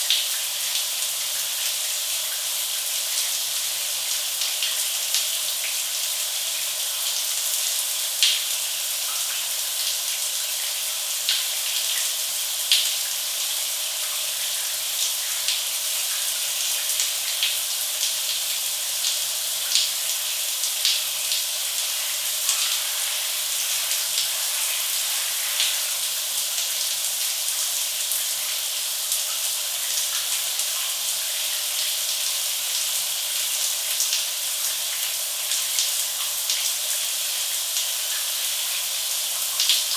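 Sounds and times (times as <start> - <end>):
shower water spraying: 19.6 - 28.3.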